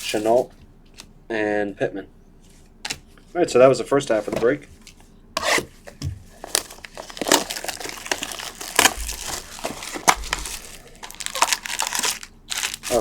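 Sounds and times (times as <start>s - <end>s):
plastic and foil wrapping crinkling: 6.3s - 13.0s.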